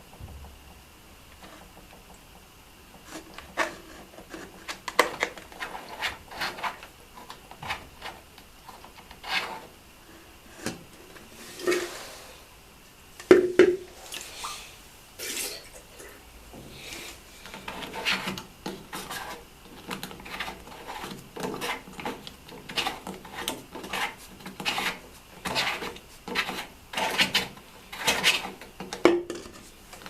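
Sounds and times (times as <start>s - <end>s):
rubbing and scraping: 3.0s - 12.5s, 16.8s - 28.6s.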